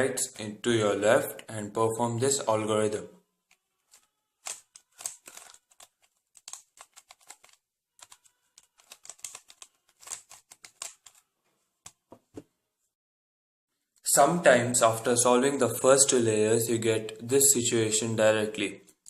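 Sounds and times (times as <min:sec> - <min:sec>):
puzzle cube plastic clicks: 0:03.5 - 0:11.2.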